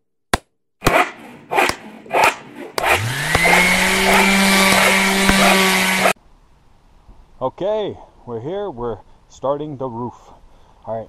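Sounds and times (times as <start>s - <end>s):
sharp knocks: 0.8s - 6.2s
power tool motor whine: 0.9s - 6.2s.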